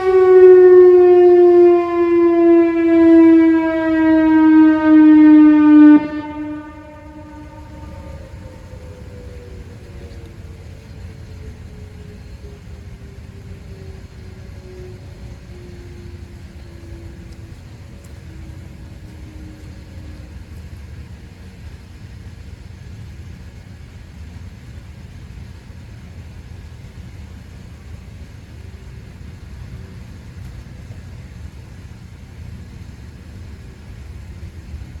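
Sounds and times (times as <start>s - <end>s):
faint warning siren wail: 0.0s - 35.0s
steady low rumble: 0.0s - 35.0s.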